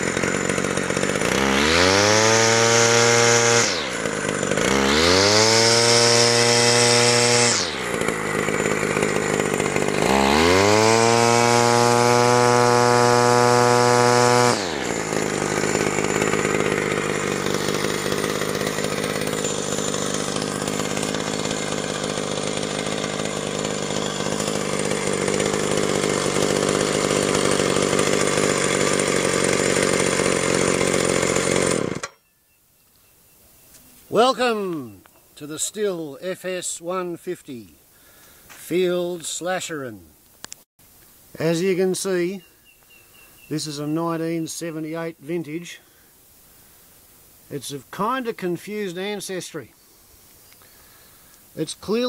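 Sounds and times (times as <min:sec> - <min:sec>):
two-stroke engine revving and idling: 0:00.0 - 0:32.2.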